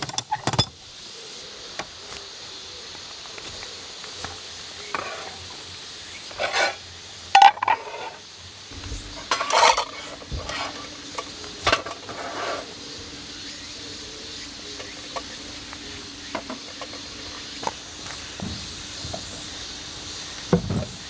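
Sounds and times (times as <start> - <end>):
steady hiss: 0.0 - 21.0
low steady hum: 8.7 - 20.9
kitchenware clinking and rattling: 8.8 - 12.2.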